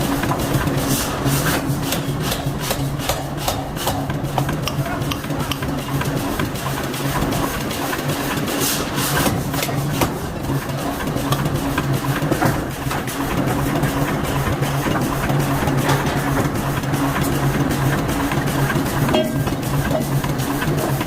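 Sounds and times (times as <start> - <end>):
machinery humming: 0.0 - 21.0.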